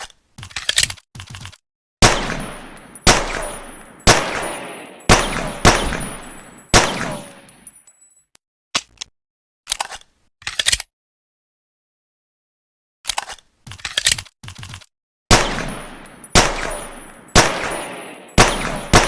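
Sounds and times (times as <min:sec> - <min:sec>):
pistol shots with echo: 0:02.0 - 0:07.6, 0:15.3 - 0:19.0.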